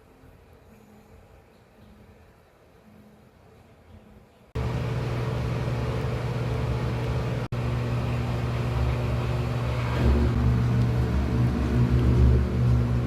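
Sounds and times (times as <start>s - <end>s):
motor hum with low drone: 4.6s - 13.0s
pulsing low rumble: 7.6s - 13.0s.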